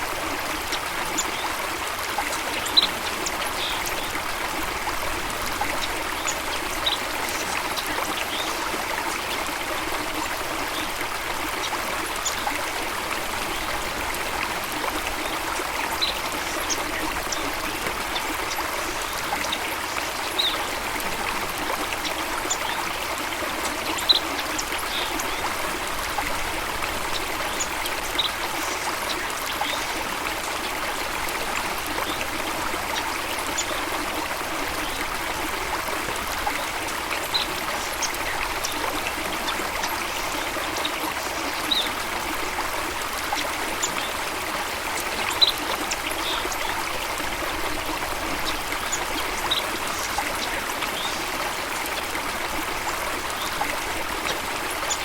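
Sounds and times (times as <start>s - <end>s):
stream running water: 0.0s - 55.0s.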